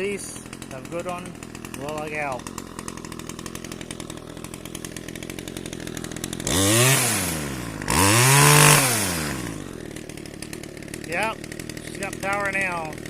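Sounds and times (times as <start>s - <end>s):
pole saw engine idling and revving: 0.0s - 13.0s.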